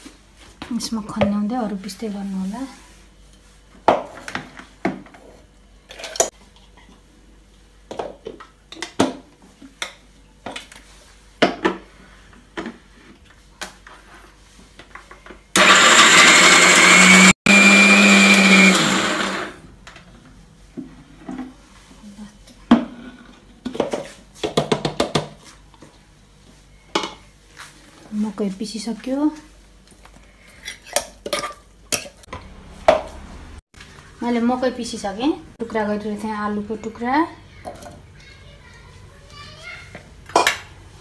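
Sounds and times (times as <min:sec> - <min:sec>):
mixer grinder grinding: 0:15.6 - 0:19.6.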